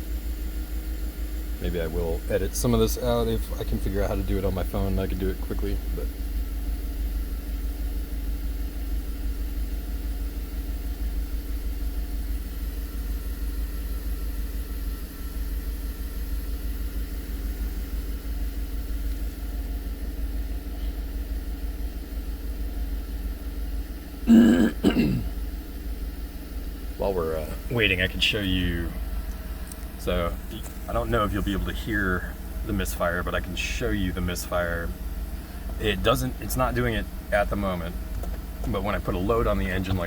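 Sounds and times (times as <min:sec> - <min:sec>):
car engine idling: 0:00.0 - 0:08.2, 0:12.9 - 0:40.0
person clearing throat: 0:24.2 - 0:25.4.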